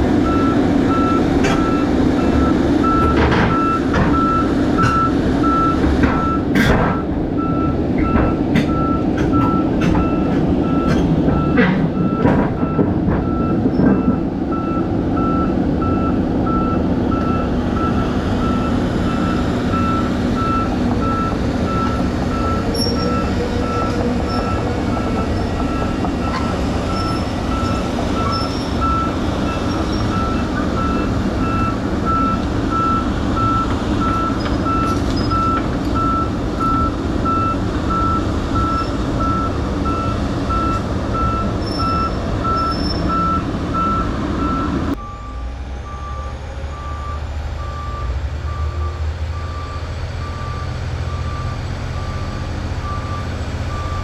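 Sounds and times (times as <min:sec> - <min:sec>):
diesel engine running: 0:00.0 - 0:54.0
metallic knocks and clanks: 0:08.0 - 0:14.2.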